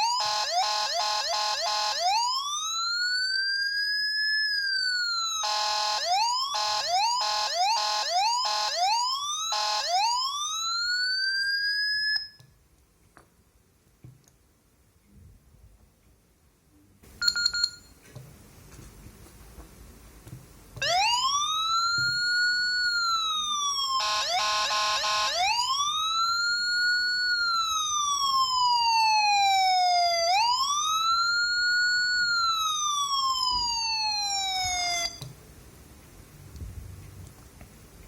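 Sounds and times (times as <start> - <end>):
electronic police siren wailing: 0.0 - 12.4, 20.8 - 35.3.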